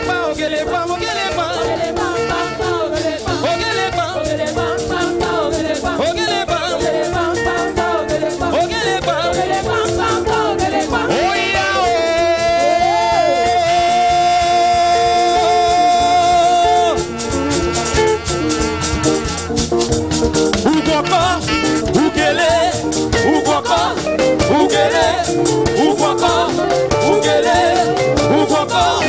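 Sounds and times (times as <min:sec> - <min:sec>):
voices singing: 0:00.0 - 0:18.2, 0:20.6 - 0:29.0
fast steady percussion beat: 0:00.0 - 0:29.0
band holding a long note: 0:01.6 - 0:04.1, 0:11.1 - 0:29.0.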